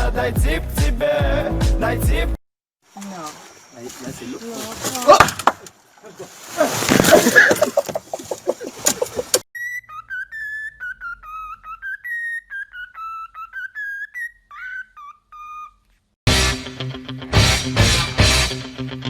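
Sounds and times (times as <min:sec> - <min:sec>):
music: 0:00.0 - 0:02.4, 0:16.3 - 0:19.0.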